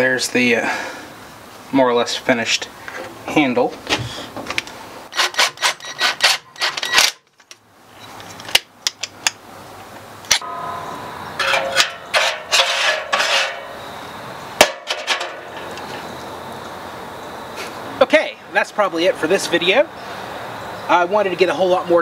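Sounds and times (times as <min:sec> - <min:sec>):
metal parts clanking: 0:10.3 - 0:13.8, 0:14.6 - 0:15.9
metal scraping rattle: 0:10.4 - 0:14.0, 0:14.6 - 0:16.0
metallic ringing: 0:10.4 - 0:15.7.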